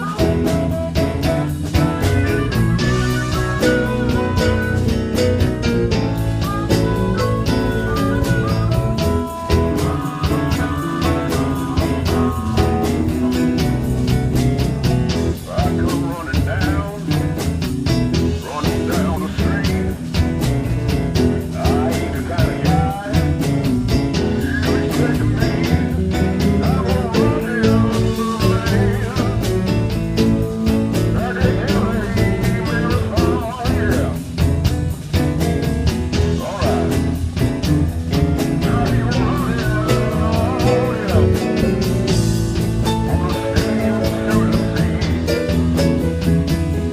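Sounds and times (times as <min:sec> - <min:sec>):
live blues band: 0:00.0 - 0:46.9
wavering lead guitar notes: 0:00.0 - 0:46.9.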